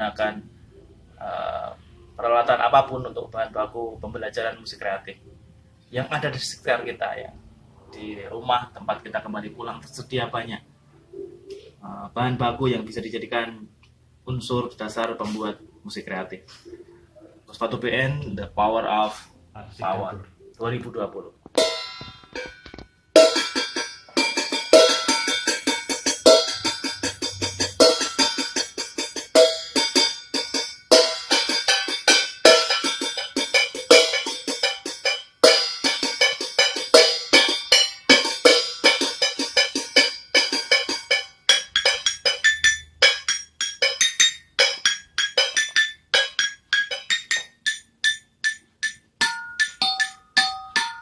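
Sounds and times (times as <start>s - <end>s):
kitchen utensils struck as percussion: 21.6s - 51.0s.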